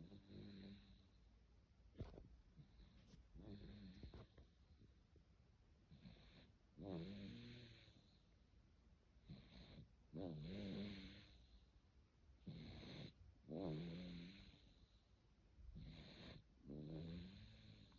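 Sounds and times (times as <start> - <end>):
quiet snoring: 0.0 - 1.3, 2.0 - 4.6, 5.9 - 8.3, 9.2 - 11.8, 12.4 - 17.9.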